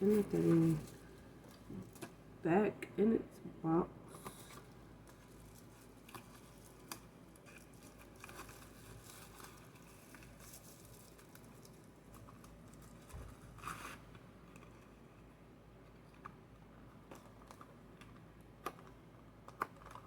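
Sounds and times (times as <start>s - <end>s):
packaging rustling: 4.1s - 14.0s.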